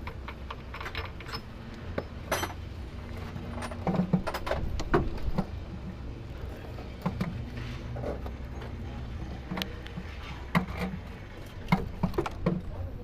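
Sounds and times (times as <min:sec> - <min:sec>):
knocks and metal clinks: 0:00.0 - 0:05.5.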